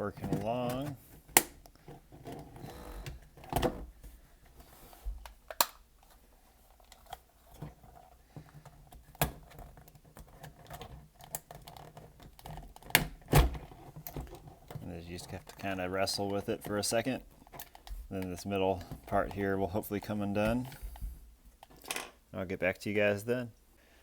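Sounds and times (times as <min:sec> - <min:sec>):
handling and scraping: 0:00.0 - 0:22.2
plastic clicks and snaps: 0:05.2 - 0:05.8.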